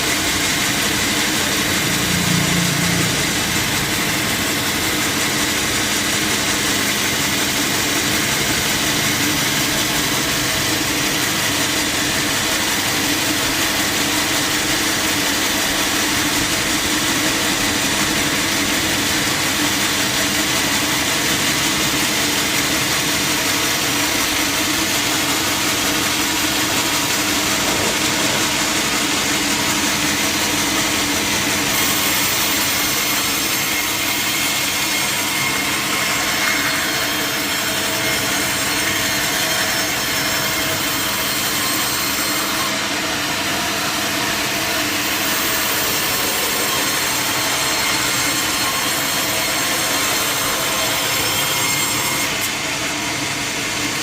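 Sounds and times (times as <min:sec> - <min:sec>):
steady machine hum: 0:00.0 - 0:39.3
saw cutting through log: 0:00.0 - 0:54.0.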